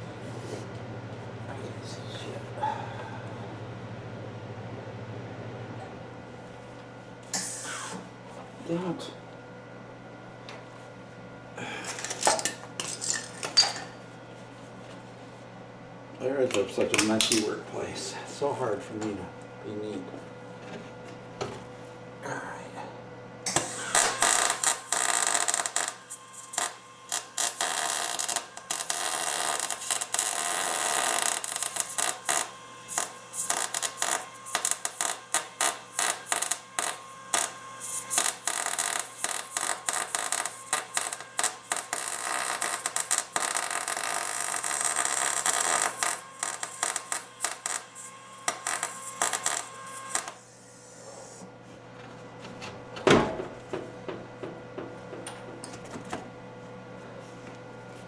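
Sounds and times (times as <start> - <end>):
welding arc crackling: 23.5 - 50.4.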